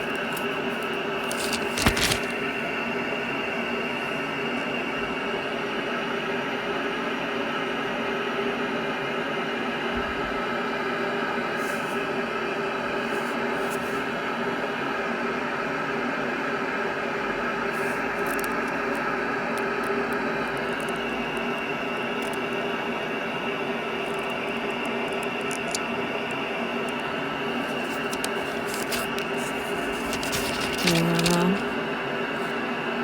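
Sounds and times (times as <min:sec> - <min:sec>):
machine hum and hiss: 0:16.9 - 0:33.0.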